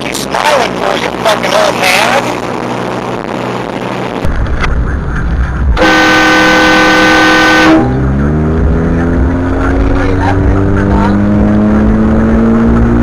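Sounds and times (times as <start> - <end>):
vehicle engine and road rumble: 0.0 - 13.0.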